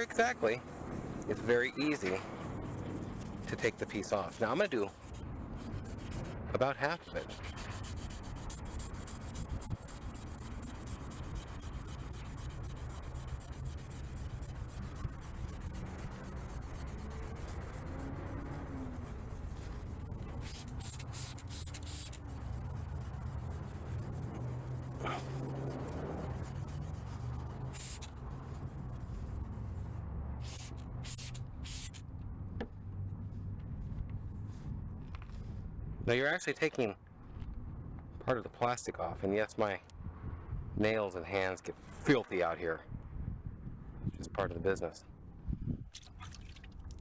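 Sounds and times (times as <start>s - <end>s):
sandpaper rubbing on plastic: 0.0s - 32.0s.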